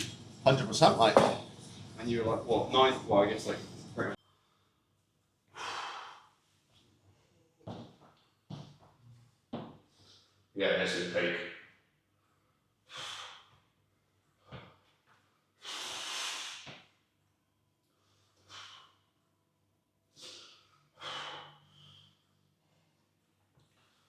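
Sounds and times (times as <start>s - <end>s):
man breathing heavily: 5.5s - 6.5s, 12.8s - 13.7s, 17.8s - 19.2s, 20.1s - 23.1s.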